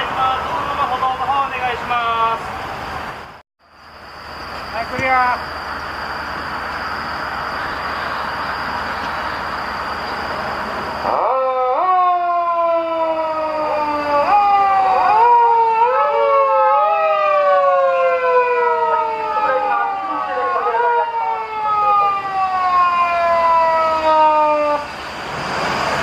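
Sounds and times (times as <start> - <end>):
police car sirens wailing: 6.6 - 26.0.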